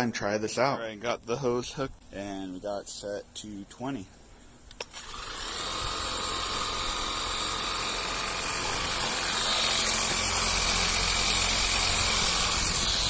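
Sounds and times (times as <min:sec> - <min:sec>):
electric motor and pump whine: 0:04.7 - 0:13.0.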